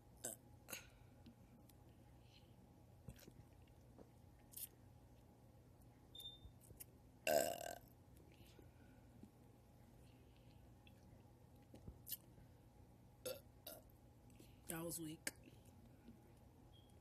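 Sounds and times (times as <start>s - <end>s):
woman burping: 7.3s - 7.8s.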